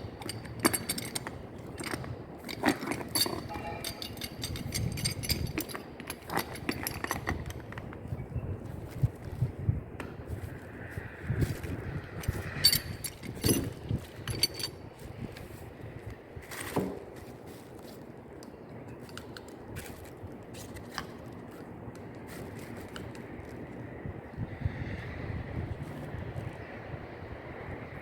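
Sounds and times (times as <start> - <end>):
metal parts clicking and clinking: 0.0 - 8.0, 11.6 - 15.5
outdoor background noise: 0.0 - 28.0.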